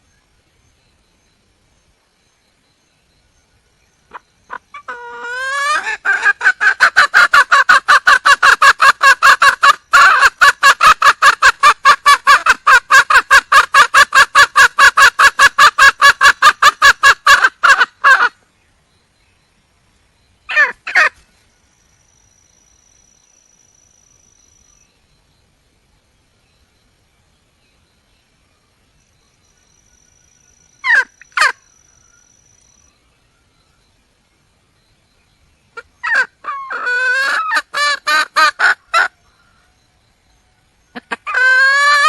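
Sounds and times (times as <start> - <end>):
hen clucking: 4.1 - 18.4, 20.5 - 21.2, 35.8 - 39.1, 41.0 - 42.0.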